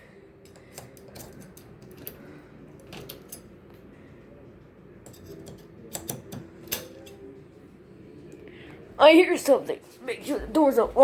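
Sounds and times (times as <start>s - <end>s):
knife clicking in door lock: 5.1s - 7.2s.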